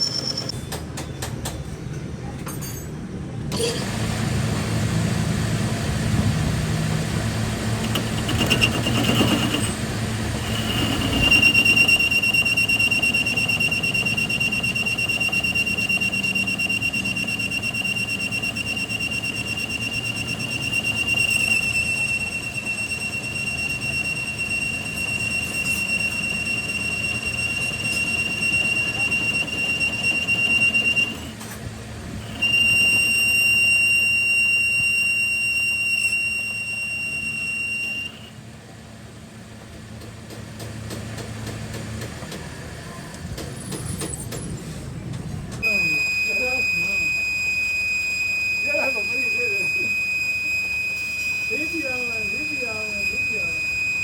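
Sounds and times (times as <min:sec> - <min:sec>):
workshop machine high-pitched whine: 0:00.0 - 0:00.8, 0:03.4 - 0:38.6, 0:41.4 - 0:54.0
low rough mechanical noise: 0:00.0 - 0:54.0.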